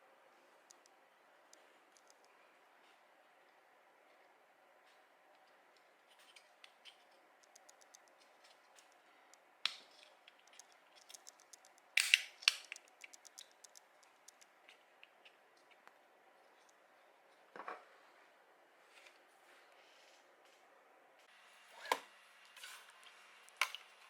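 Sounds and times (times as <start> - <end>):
plastic parts clicking: 6.2 - 14.5.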